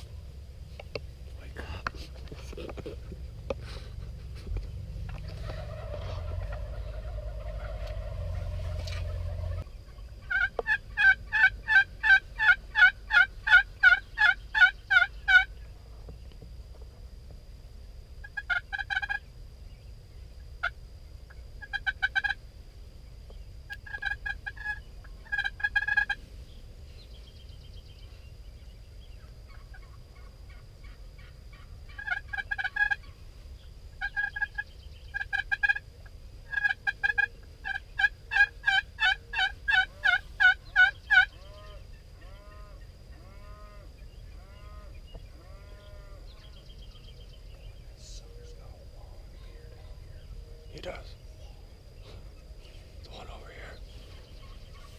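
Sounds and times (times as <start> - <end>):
steady low rumble: 0.0 - 54.9
turkeys gobbling: 2.0 - 15.6, 18.2 - 19.3, 20.6 - 22.4, 23.7 - 26.2, 29.2 - 33.2, 34.0 - 46.5, 54.0 - 54.9
turkeys yelping: 2.2 - 15.6, 18.2 - 19.3, 20.6 - 22.4, 23.7 - 26.2, 29.2 - 47.1, 54.0 - 54.9.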